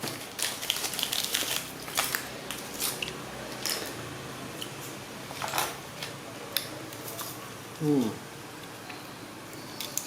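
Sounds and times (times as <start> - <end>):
plastic packaging crinkling: 0.0 - 4.0.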